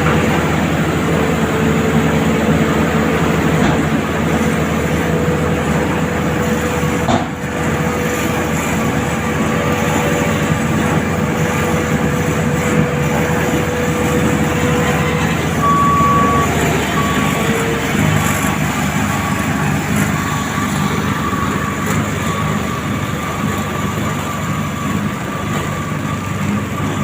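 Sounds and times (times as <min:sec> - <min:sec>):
paving machinery engines running: 0:00.0 - 0:27.0
thin high tone: 0:14.1 - 0:18.6.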